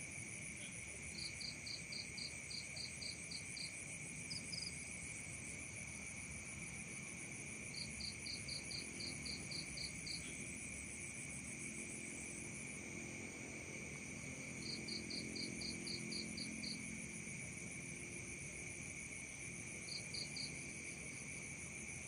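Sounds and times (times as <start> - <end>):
pulsed cricket chirping: 0.1 - 22.0.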